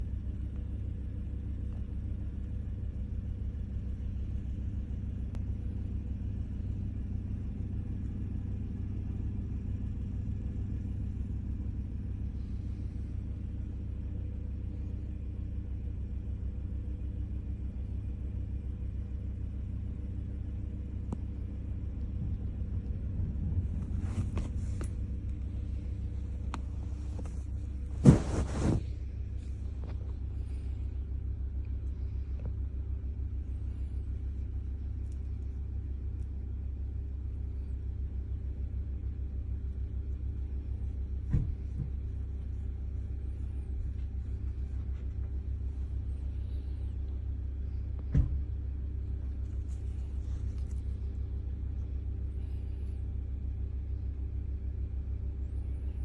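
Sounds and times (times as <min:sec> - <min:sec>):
low pulsing rumble: 0:00.0 - 0:56.0
rustling handling noises: 0:23.7 - 0:30.7, 0:49.0 - 0:51.3.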